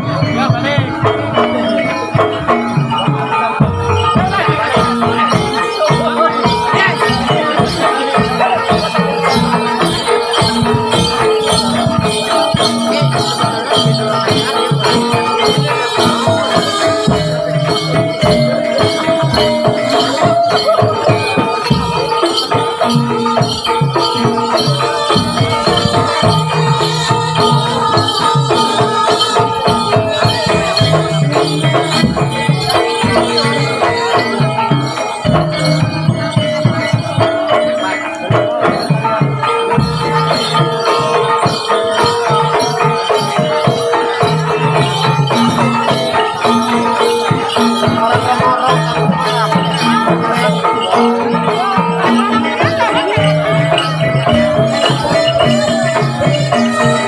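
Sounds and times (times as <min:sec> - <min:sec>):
held melodic tones: 0:00.0 - 0:57.0
percussion keeping a steady beat: 0:00.0 - 0:57.0.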